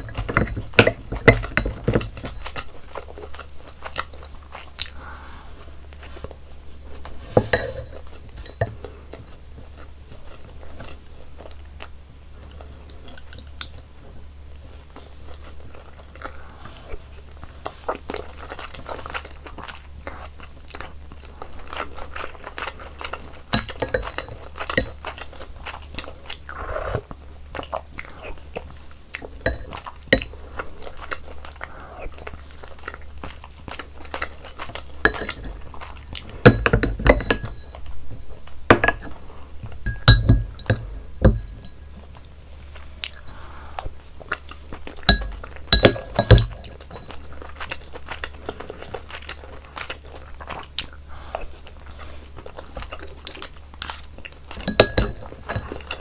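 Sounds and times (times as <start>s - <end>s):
utensil clinking against bowl: 0.0s - 2.6s, 7.2s - 8.8s, 23.5s - 25.2s, 29.4s - 30.4s, 34.4s - 42.1s, 45.0s - 47.3s, 54.5s - 56.0s
chewing and biting: 0.0s - 56.0s.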